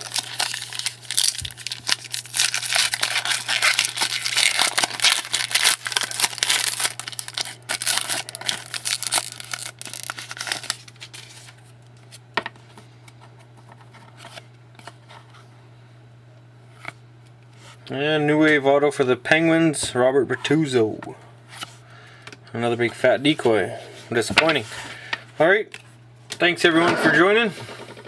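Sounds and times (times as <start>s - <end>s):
plastic wrapper tearing and crinkling: 0.0s - 11.6s
cards rustling: 0.0s - 12.2s.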